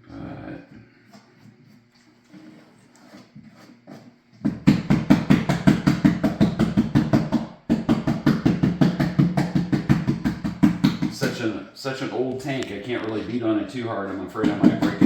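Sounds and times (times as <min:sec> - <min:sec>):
rapid knocking on glass tank: 0:04.5 - 0:11.4, 0:14.4 - 0:15.0.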